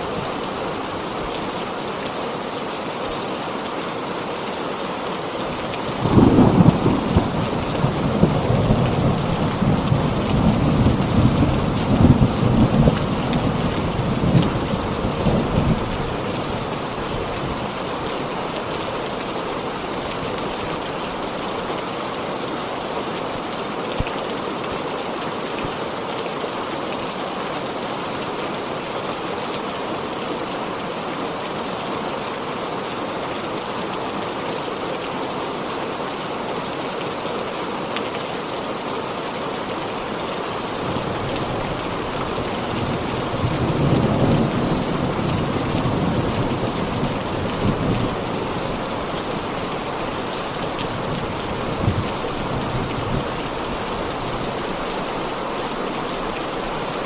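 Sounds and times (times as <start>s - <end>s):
heavy rain pouring: 0.0s - 57.0s
thunder rumble: 5.9s - 11.4s.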